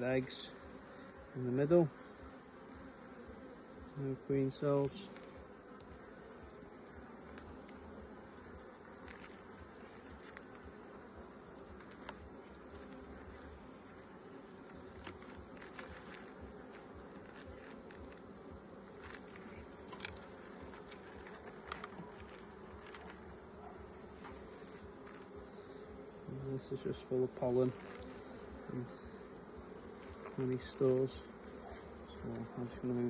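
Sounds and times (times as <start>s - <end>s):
honeybees buzzing: 0.0s - 33.0s.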